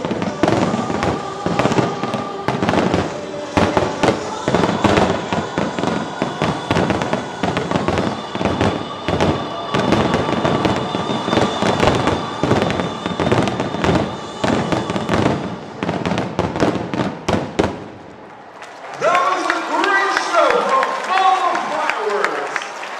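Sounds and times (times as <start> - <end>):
fireworks bangs and crackles: 0.0 - 18.1.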